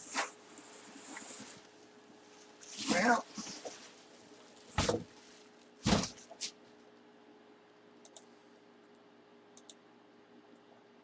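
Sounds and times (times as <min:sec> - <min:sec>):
low room hum: 0:00.0 - 0:11.0
box thumping: 0:04.7 - 0:05.1, 0:05.8 - 0:06.4.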